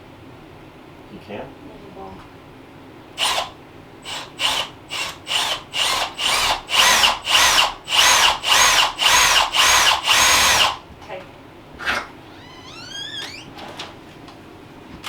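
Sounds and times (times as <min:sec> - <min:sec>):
power drill whining in bursts: 0:03.2 - 0:10.8.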